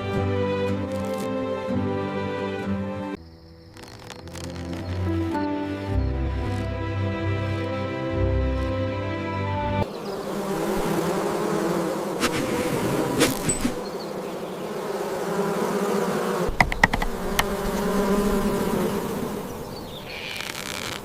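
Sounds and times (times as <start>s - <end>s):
background music: 0.0s - 9.8s
insects buzzing: 0.0s - 21.0s
sharp clicks: 16.5s - 17.6s.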